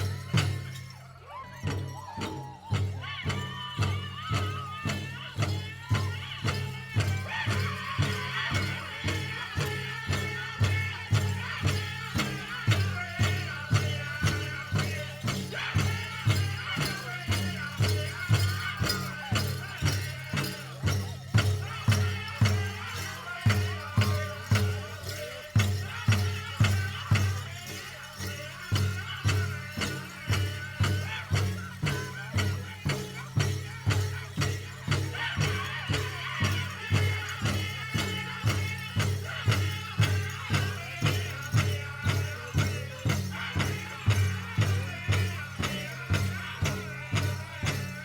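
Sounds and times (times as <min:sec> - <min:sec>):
bass drum steady beat: 0:00.0 - 0:00.9, 0:02.8 - 0:48.0
high-pitched group singing: 0:00.0 - 0:48.0.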